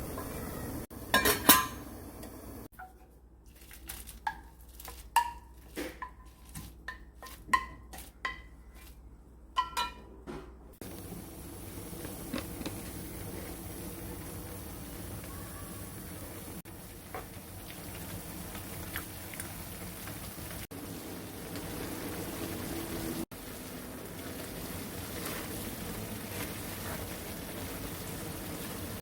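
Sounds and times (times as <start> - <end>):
metal utensils clinking on dishes: 1.1 - 1.8.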